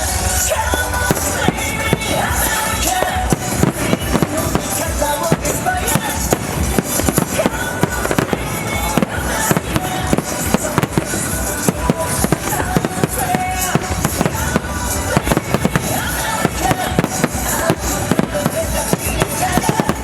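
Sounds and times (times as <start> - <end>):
fireworks bursting: 0.0 - 20.0
music from loudspeakers: 0.0 - 20.0.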